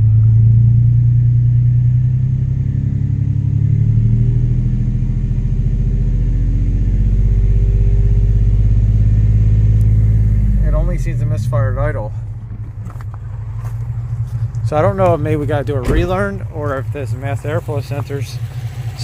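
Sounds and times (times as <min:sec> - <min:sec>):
car engine misfiring: 0:08.8 - 0:19.0.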